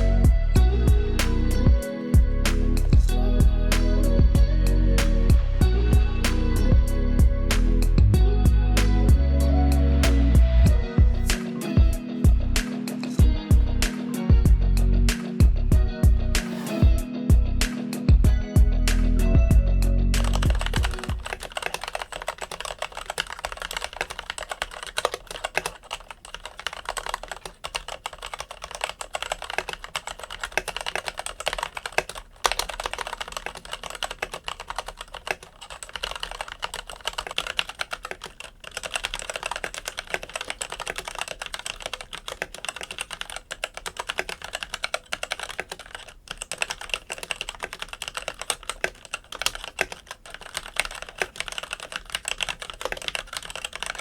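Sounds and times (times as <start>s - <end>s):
fast typing on mechanical keyboard: 20.2s - 54.0s.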